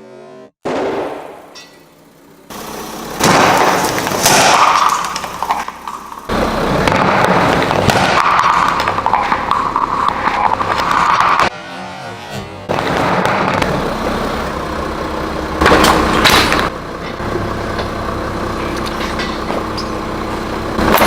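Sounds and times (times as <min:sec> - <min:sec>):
crackling and popping: 0:03.2 - 0:11.5.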